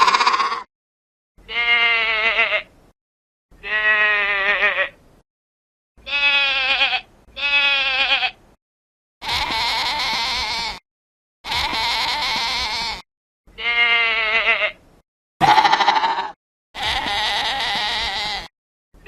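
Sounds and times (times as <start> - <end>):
goat bleating: 1.4 - 2.7, 3.6 - 5.0, 6.0 - 8.4, 9.2 - 10.8, 11.4 - 14.8, 15.4 - 18.5.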